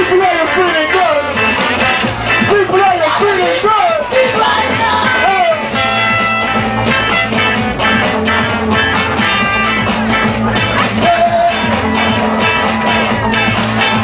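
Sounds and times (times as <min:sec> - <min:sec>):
live ska band music: 0:00.0 - 0:14.0
sliding vocal line: 0:02.9 - 0:05.7
drum beat: 0:03.8 - 0:14.0.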